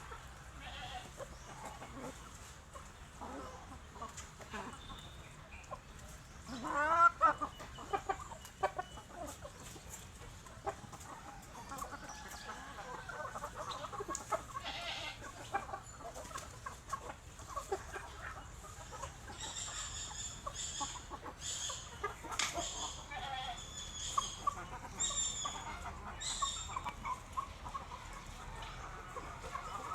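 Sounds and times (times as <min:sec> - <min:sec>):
chickens clucking: 0:00.0 - 0:29.9
high-pitched chicken calls: 0:06.4 - 0:10.0, 0:10.6 - 0:29.9.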